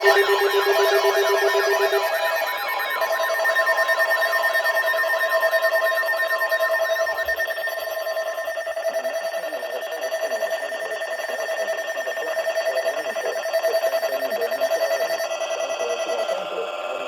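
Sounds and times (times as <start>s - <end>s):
fluttering electronic alert tone: 0.0s - 10.8s.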